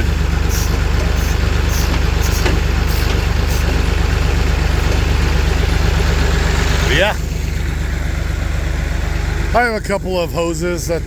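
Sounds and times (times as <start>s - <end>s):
tractor engine idling: 0.0s - 11.0s.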